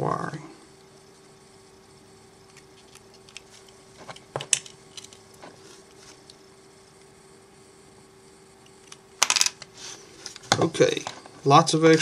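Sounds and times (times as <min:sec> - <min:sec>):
faint steady hum: 0:00.0 - 0:12.0.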